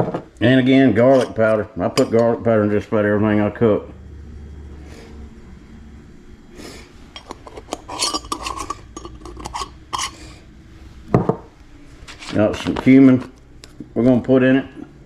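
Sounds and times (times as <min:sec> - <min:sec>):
low steady hum: 0:00.0 - 0:15.0
spice containers clinking and rattling: 0:07.2 - 0:10.2.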